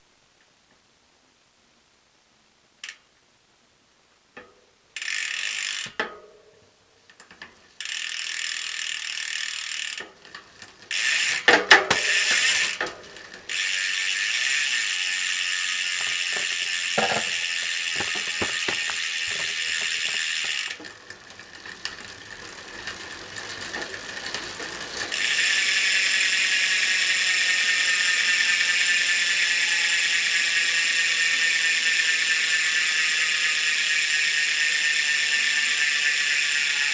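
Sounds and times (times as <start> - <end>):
bicycle freehub buzzing: 5.0 - 6.0, 7.8 - 36.9.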